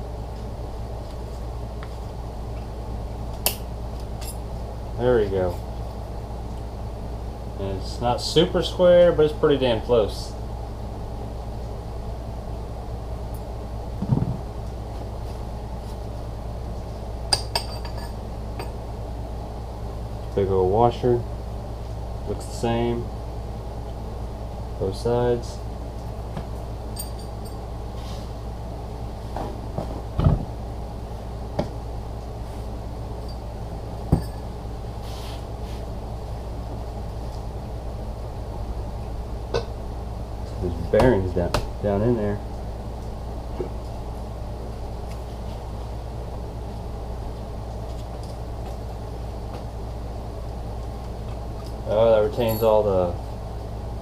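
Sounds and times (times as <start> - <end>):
steady low hum: 0.0 - 54.0
metallic clinks: 17.3 - 18.7, 26.9 - 27.6, 34.0 - 34.5, 52.3 - 52.8.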